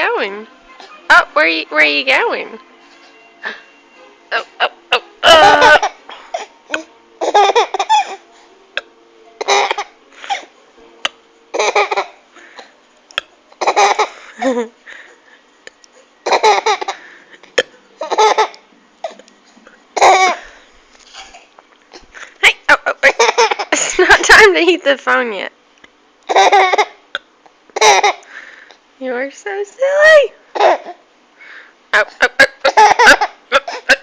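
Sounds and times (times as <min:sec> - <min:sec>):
person laughing: 0:04.3 - 0:06.0, 0:13.8 - 0:15.1, 0:22.2 - 0:24.5, 0:32.0 - 0:34.0.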